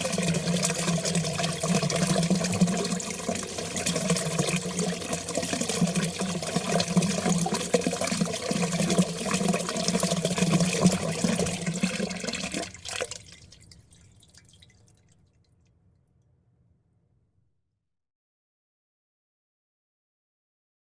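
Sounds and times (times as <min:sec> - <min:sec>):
water flowing and splashing: 0:00.0 - 0:15.2.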